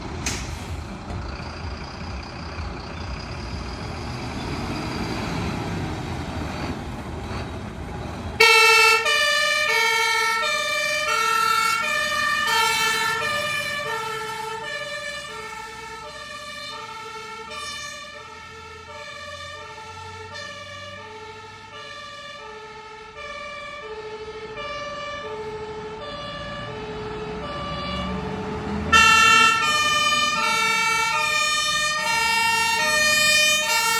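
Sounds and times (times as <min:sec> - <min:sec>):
truck engine rumble: 0:00.0 - 0:33.9
fire truck two-tone siren: 0:08.4 - 0:33.9.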